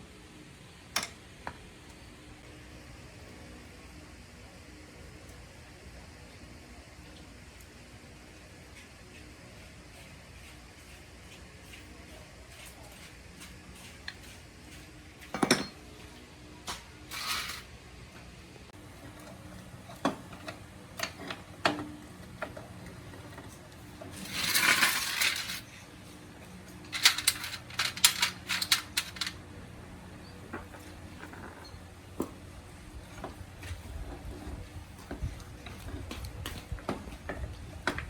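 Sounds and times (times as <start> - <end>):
scraping rustle: 16.7 - 17.8, 23.1 - 29.4
small metal objects clinking: 24.2 - 25.7, 26.9 - 29.4.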